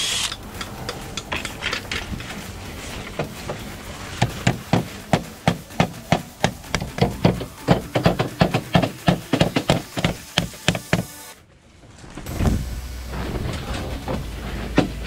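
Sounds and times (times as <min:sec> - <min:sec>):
hammer nailing slate: 0:04.2 - 0:11.2.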